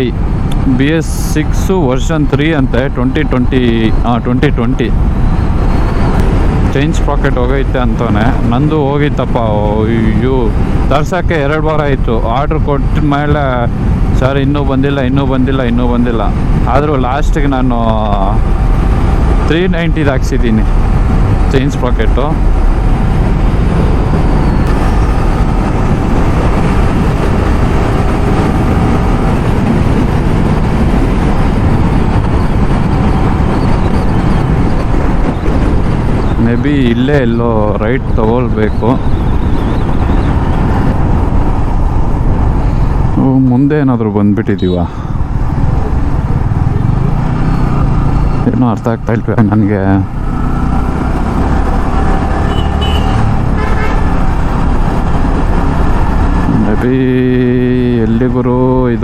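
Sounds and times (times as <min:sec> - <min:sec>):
wind rushing over microphone: 0:00.0 - 0:59.0
motorcycle engine running: 0:20.6 - 0:36.4, 0:45.0 - 0:48.6, 0:50.0 - 0:56.6.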